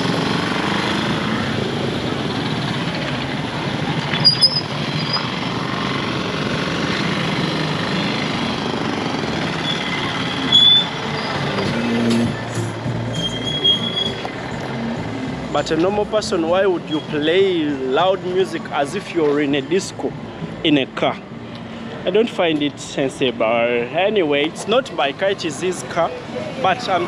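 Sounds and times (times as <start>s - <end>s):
road traffic rumble: 0.0s - 27.0s
high chirps: 9.6s - 14.2s.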